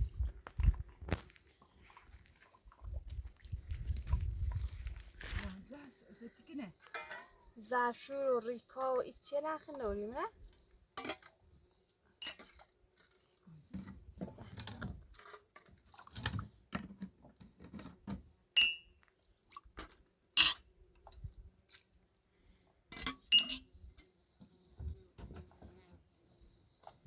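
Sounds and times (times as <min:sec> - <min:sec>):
ringing clinks of dishes: 0:18.6 - 0:18.8, 0:23.3 - 0:23.6.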